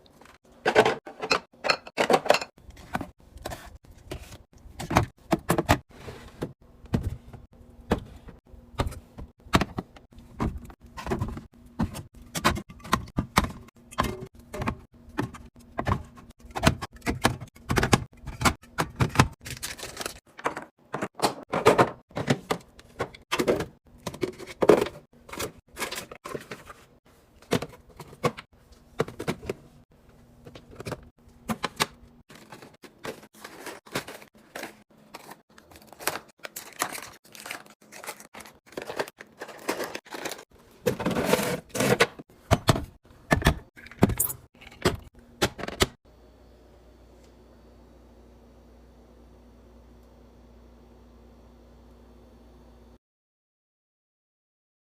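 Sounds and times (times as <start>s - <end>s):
plastic containers being handled: 0.0s - 46.0s
faint steady hum: 46.1s - 53.0s.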